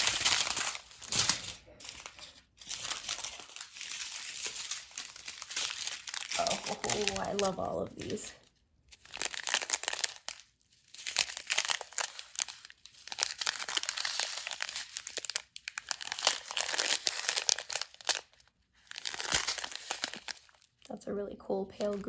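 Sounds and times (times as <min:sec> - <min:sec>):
plastic bags crinkling: 0:00.0 - 0:20.9, 0:21.8 - 0:22.0.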